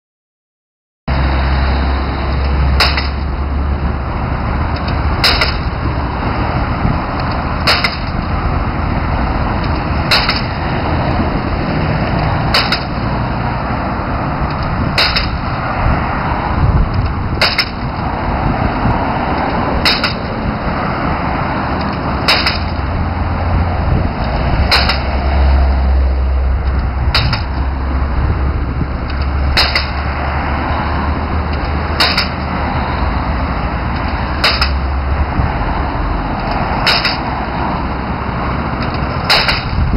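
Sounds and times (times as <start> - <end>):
drilling rig engine running: 1.1 - 39.9
percussive hammer blows: 2.3 - 3.4, 4.9 - 5.9, 6.8 - 8.4, 9.6 - 11.0, 12.0 - 13.2, 14.8 - 15.6, 16.9 - 18.0, 18.7 - 20.4, 21.8 - 23.2, 23.9 - 25.8, 27.1 - 27.7, 29.1 - 30.4, 31.6 - 32.8, 34.0 - 34.9, 36.8 - 37.4, 39.2 - 39.9.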